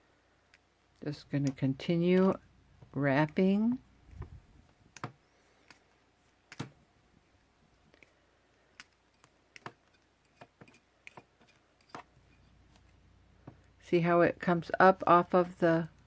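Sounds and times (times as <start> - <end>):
wire clicking on metal pliers: 8.7 - 12.1.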